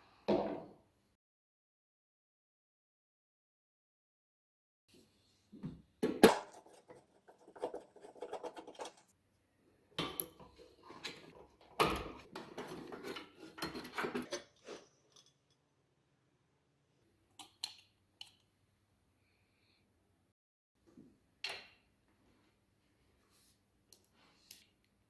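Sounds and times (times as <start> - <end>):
parts clattering and scraping: 6.0 - 9.2, 10.0 - 15.6.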